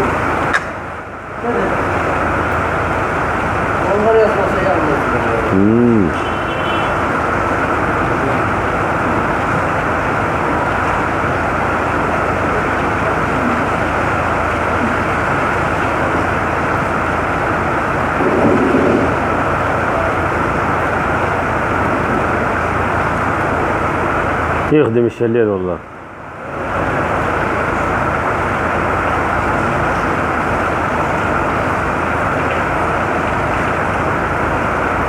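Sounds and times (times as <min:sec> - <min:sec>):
heavy rain pouring: 0:00.0 - 0:24.8, 0:25.8 - 0:35.0.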